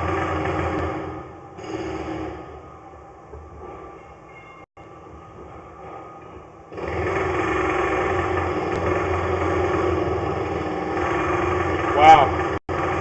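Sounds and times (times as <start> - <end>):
engine running: 6.7 - 13.0.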